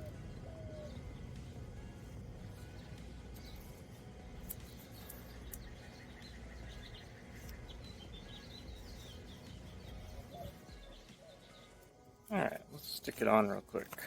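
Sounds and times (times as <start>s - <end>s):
low steady rumble: 0.0s - 10.8s
small birds chirping: 0.0s - 14.0s.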